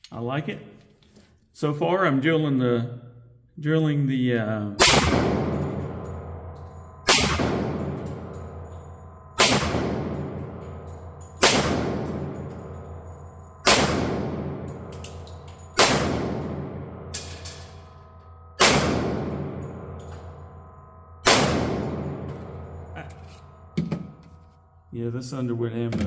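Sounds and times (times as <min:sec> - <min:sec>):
pistol shots echoing: 0:04.8 - 0:06.1, 0:07.1 - 0:08.4, 0:09.4 - 0:10.7, 0:11.4 - 0:12.9, 0:13.6 - 0:17.3, 0:18.6 - 0:19.9, 0:21.2 - 0:22.3.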